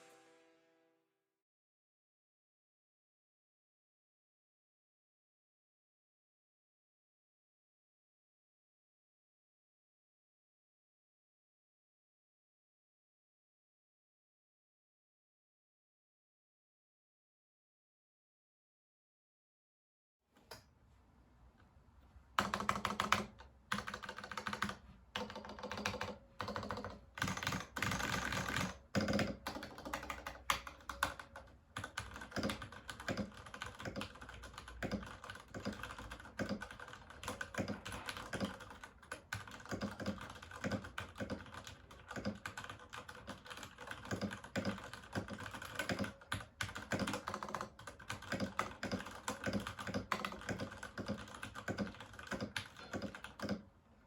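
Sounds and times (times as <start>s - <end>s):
mechanical keyboard typing: 22.4s - 53.7s.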